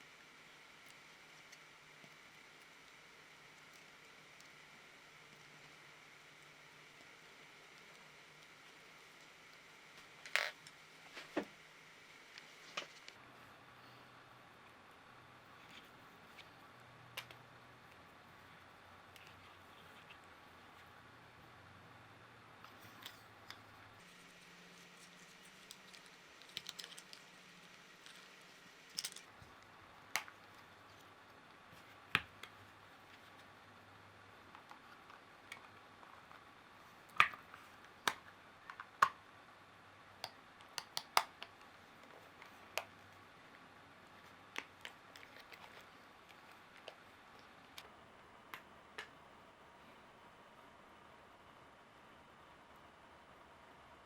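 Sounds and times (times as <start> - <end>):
faint steady hum: 0.0 - 54.0
small hard parts clicking: 25.0 - 27.3, 28.0 - 29.4.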